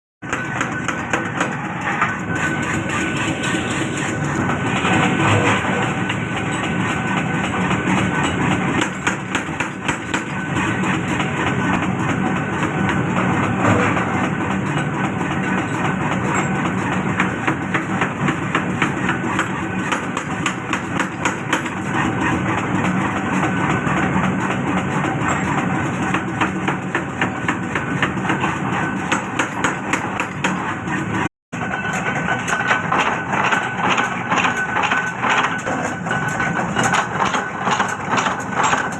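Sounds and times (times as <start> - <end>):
continuous mechanical din: 0.2 - 38.9
rapid irregular knocking: 0.2 - 38.9.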